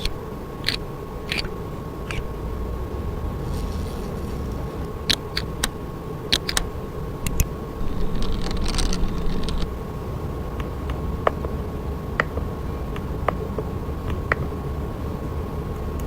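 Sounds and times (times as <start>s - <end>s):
crackling hiss: 0.0s - 16.0s
machine hum with thin whine: 0.0s - 16.0s
sharp clicks: 5.1s - 7.5s.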